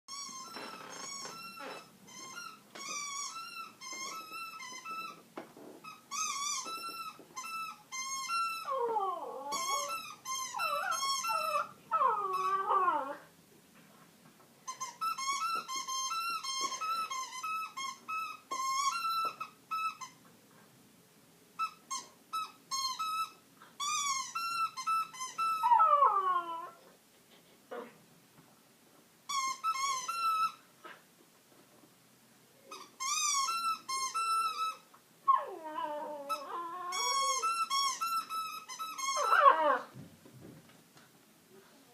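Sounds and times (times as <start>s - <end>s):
rubber chicken toy squeaking: 0.1s - 5.2s, 5.8s - 12.7s, 14.7s - 20.2s, 21.6s - 26.0s, 29.3s - 30.6s, 32.7s - 39.8s.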